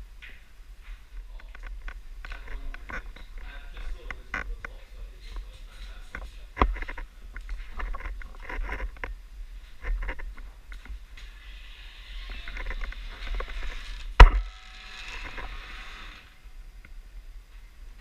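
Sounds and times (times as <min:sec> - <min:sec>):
clattering and rustling handling noise: 0:01.1 - 0:11.4.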